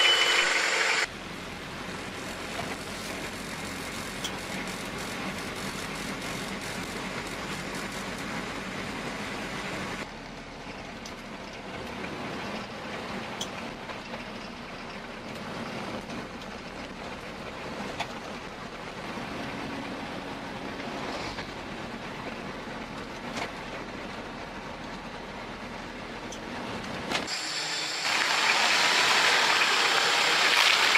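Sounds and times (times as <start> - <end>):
machine running steadily: 0.0 - 30.9.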